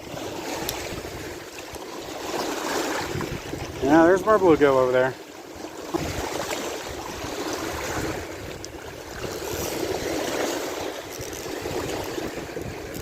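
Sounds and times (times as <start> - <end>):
wind rumble on microphone: 0.0 - 1.5, 2.7 - 4.7, 5.8 - 13.0
water lapping against rocks: 0.0 - 13.0.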